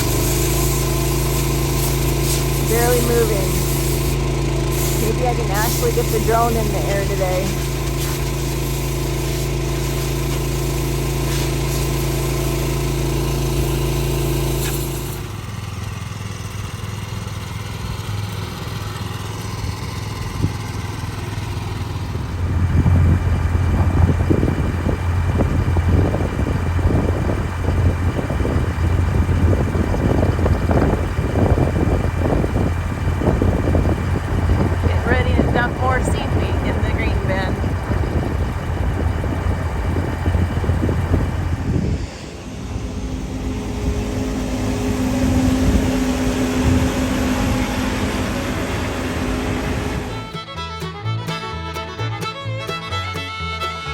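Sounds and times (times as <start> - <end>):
vehicle engine running: 0.0 - 53.9
uneven low rumble: 22.5 - 50.4.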